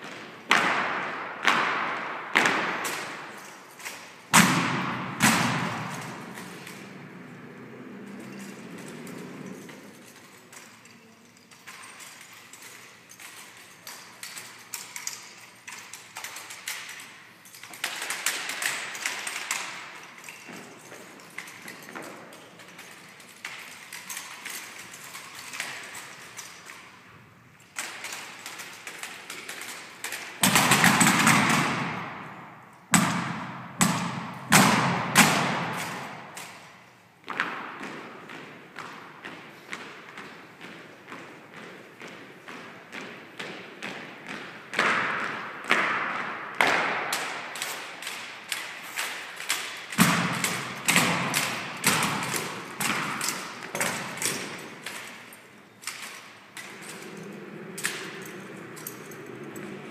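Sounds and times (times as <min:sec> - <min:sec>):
loud echoing thumps: 0:04.3 - 0:06.4.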